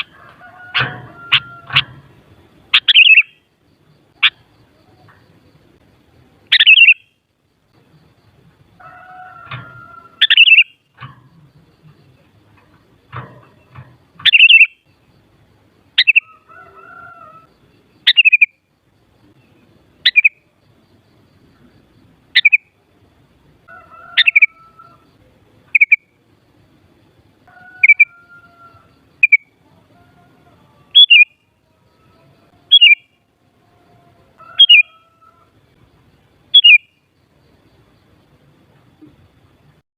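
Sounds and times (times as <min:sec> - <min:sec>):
fainter lower bird call notes: 0:02.7 - 0:03.4, 0:06.5 - 0:07.2, 0:09.0 - 0:10.9, 0:14.2 - 0:14.8, 0:27.5 - 0:29.6, 0:30.9 - 0:33.2, 0:34.4 - 0:35.5, 0:36.5 - 0:37.0.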